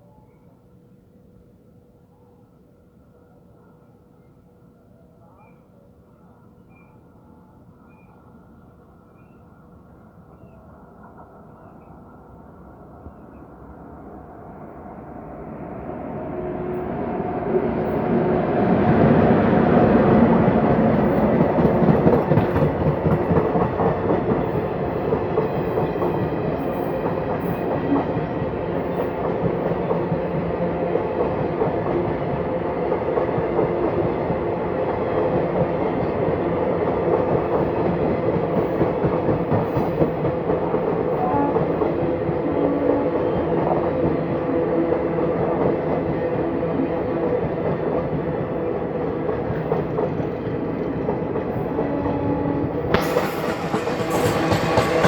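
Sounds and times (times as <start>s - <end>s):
train passing at speed: 7.4s - 55.0s
coaches clattering over rail joints: 53.0s - 55.0s.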